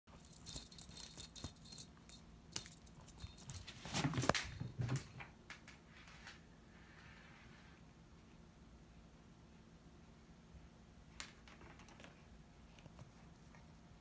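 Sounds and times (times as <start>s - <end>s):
toy clicks and rattles: 0.2s - 3.6s.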